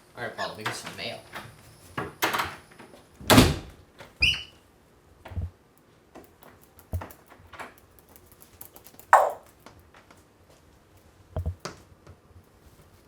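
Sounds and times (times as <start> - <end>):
parrot chirp: 9.2 - 9.4
soft knocks and handling noises: 11.4 - 12.2.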